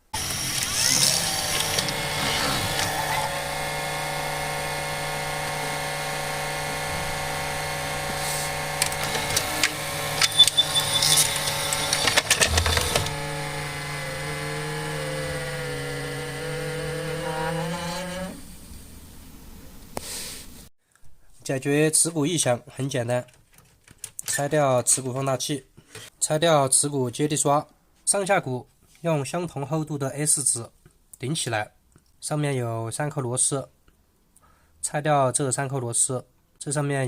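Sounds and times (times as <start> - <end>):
video recorder drum humming: 0.2 - 18.4
clicks and scraping: 0.4 - 3.3, 8.1 - 13.3, 23.2 - 24.4.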